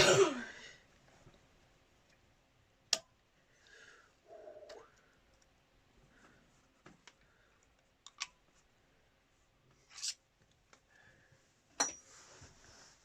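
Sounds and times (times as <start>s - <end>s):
tools scraping on metal: 9.9s - 10.2s.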